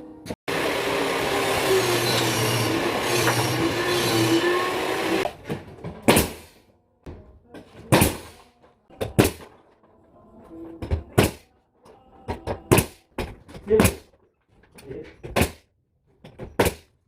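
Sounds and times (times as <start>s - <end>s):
carpentry bangs and knocks: 5.2s - 9.8s, 12.2s - 14.2s, 15.0s - 17.0s.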